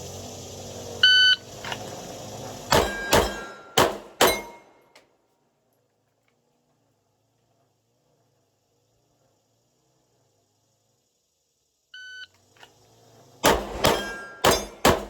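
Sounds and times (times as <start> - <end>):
shot timer beep: 1.0 - 1.4
pistol shots: 2.7 - 4.6, 13.4 - 15.0.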